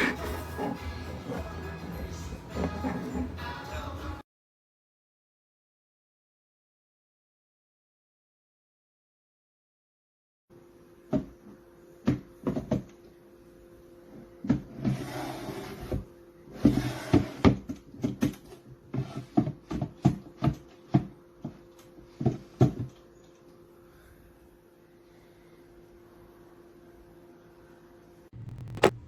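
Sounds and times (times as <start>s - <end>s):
drawer scraping slides: 0.0s - 3.4s, 14.7s - 17.6s.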